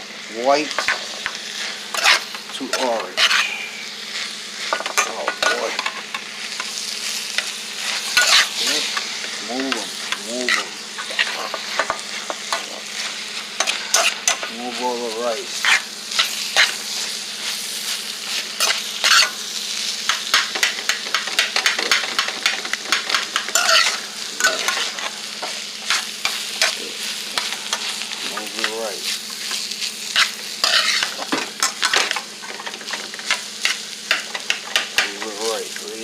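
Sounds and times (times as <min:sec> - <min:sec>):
rice sizzling in a pan: 0:00.0 - 0:36.0
utensil scraping a pan: 0:00.7 - 0:03.9, 0:07.8 - 0:14.9, 0:29.4 - 0:35.2.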